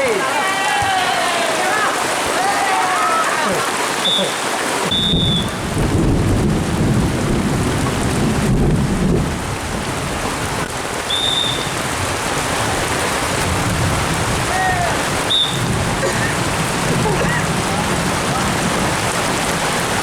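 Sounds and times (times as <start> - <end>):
heavy rain hissing: 0.0 - 20.0
low rumble of thunder: 5.1 - 10.6.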